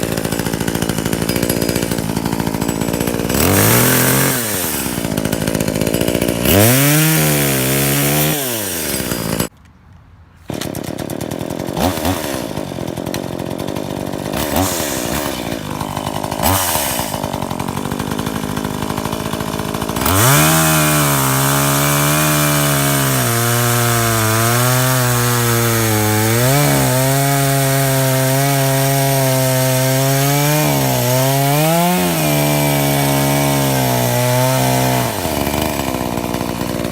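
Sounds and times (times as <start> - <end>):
chainsaw engine revving: 0.0 - 9.5, 10.5 - 36.9.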